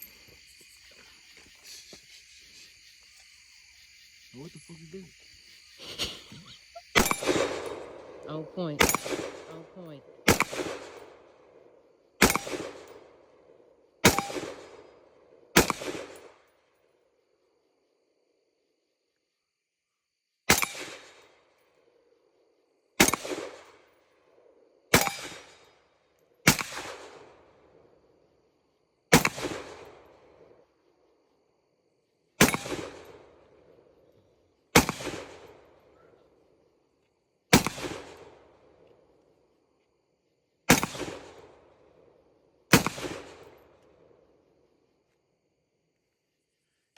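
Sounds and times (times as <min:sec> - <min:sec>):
gunshots with echo: 0:08.8 - 0:11.2, 0:34.8 - 0:35.5.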